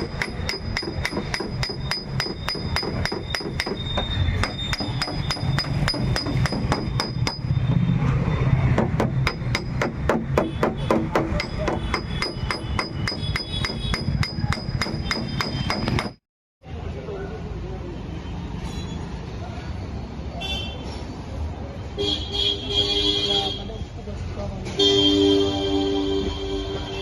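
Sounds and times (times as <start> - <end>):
hammer tapping sheet metal: 0.0 - 7.6, 8.7 - 16.2.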